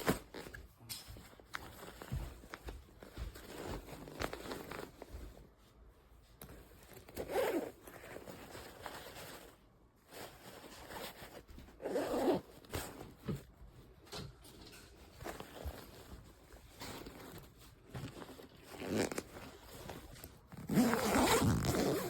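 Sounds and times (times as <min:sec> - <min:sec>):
bag handling rustle: 0:00.0 - 0:22.0
zipper rasping on backpack: 0:03.4 - 0:05.1, 0:06.4 - 0:13.2, 0:15.2 - 0:22.0.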